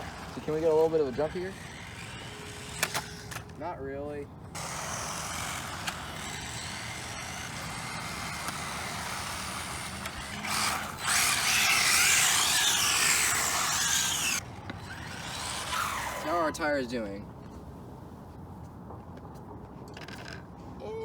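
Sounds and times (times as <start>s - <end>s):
electric rc car motor whine: 0.0s - 3.5s, 4.5s - 16.7s
rc car tyre noise: 0.0s - 3.7s, 4.5s - 16.9s.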